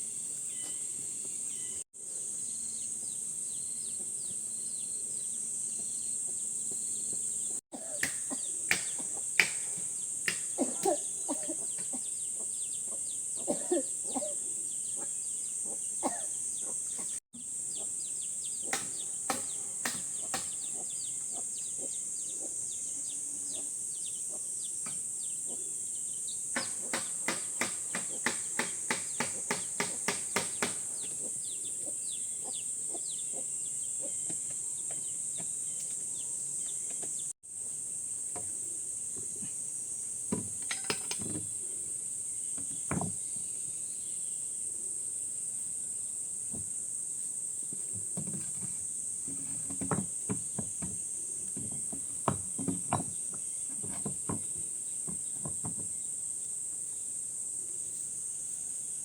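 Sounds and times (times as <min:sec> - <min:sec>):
insects droning: 0:00.0 - 0:59.0
even knocks: 0:26.6 - 0:30.9.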